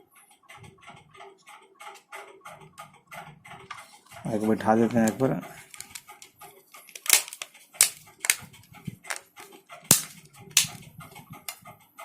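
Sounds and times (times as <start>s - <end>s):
plastic phone parts clicking: 4.9s - 6.3s, 6.9s - 11.6s.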